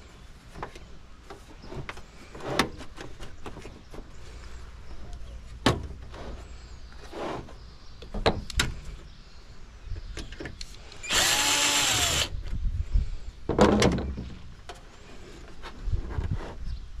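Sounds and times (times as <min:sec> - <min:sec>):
power drill running: 0:11.0 - 0:12.3.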